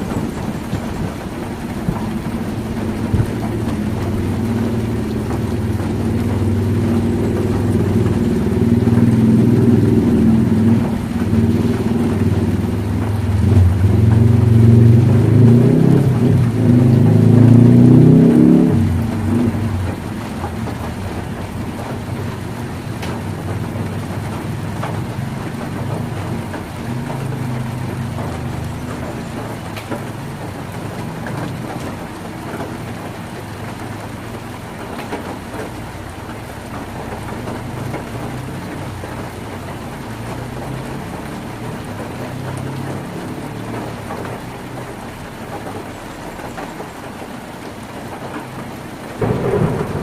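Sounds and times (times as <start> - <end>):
heavy rain on a tin roof: 0.0 - 50.0
low rumble: 49.2 - 50.0.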